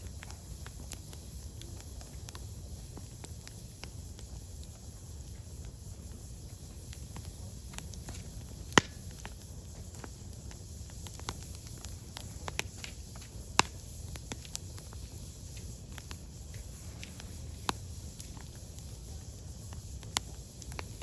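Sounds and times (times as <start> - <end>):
firewood crackling: 0.0 - 21.0
loud fire pops: 0.0 - 21.0.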